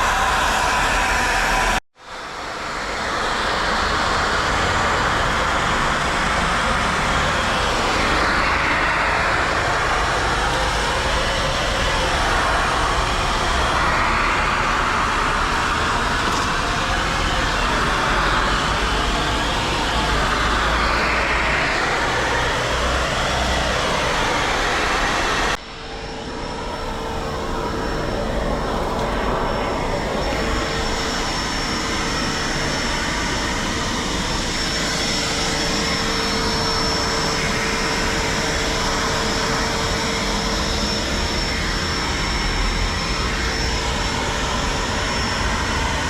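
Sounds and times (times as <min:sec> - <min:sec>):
shop vacuum running: 0:00.0 - 0:01.8, 0:26.7 - 0:46.0.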